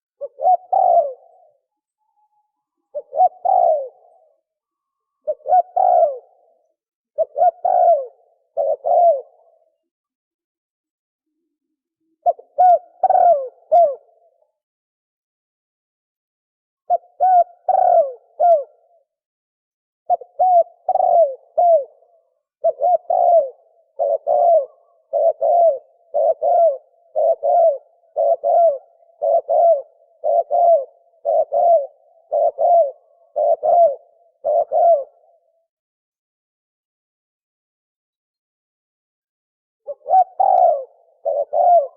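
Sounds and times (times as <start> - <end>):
dove cooing: 0.0 - 1.7, 2.8 - 4.5, 5.2 - 9.9, 12.2 - 14.4, 16.9 - 19.1, 20.1 - 35.6, 39.9 - 41.9.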